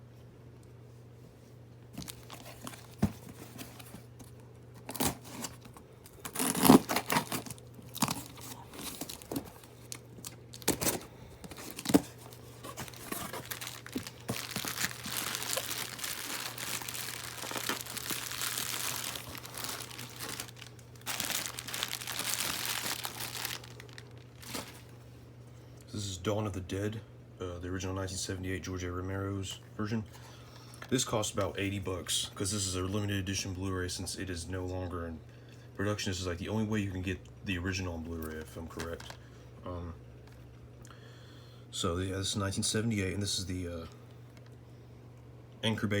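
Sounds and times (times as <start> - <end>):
faint low hum: 0.0 - 46.0
packaging tearing and crinkling: 2.0 - 3.9, 4.8 - 24.9.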